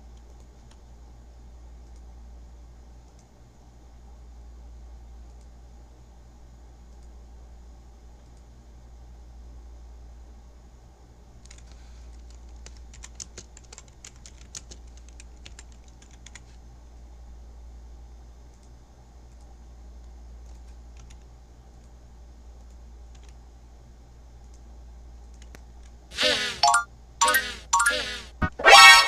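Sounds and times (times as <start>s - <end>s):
typing on keyboard: 11.4s - 16.5s, 20.4s - 21.9s, 22.6s - 23.4s.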